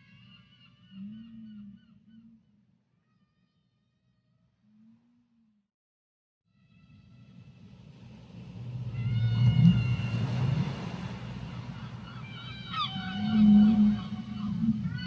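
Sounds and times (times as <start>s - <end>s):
whale low moaning call: 0.0s - 2.6s, 8.7s - 15.0s
whale high wavering calls: 0.0s - 3.2s, 8.7s - 15.0s.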